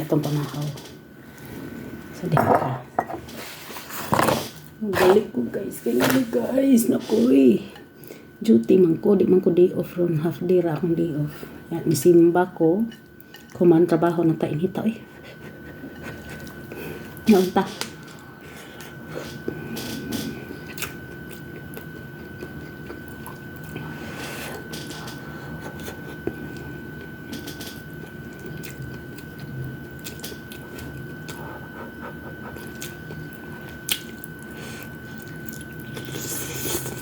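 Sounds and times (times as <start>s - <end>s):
chewing and wet mouth sounds: 20.4s - 24.0s, 24.6s - 37.0s.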